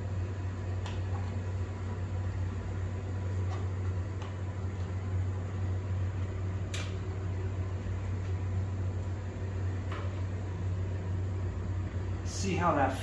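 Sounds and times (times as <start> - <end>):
fan humming: 0.0 - 13.0.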